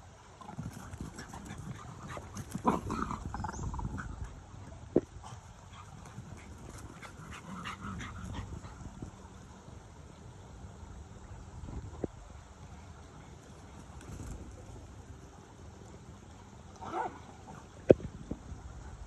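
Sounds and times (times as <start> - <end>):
dogs play-fighting: 0.4 - 9.2.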